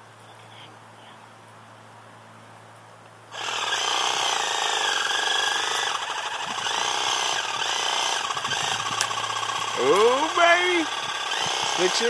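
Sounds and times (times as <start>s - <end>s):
reciprocating saw cutting wood: 3.3s - 12.0s.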